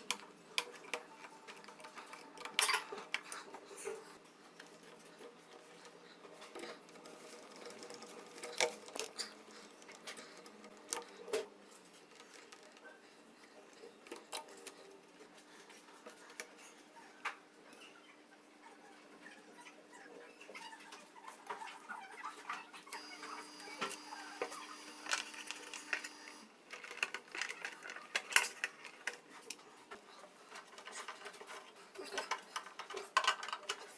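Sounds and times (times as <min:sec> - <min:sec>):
small hard parts clicking: 0:00.0 - 0:14.9, 0:22.5 - 0:33.9.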